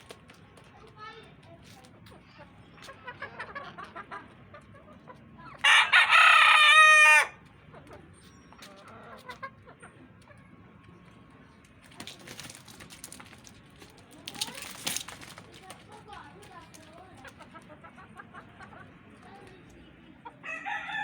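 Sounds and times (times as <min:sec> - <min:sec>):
rooster crowing: 0:05.6 - 0:07.4, 0:20.4 - 0:21.0.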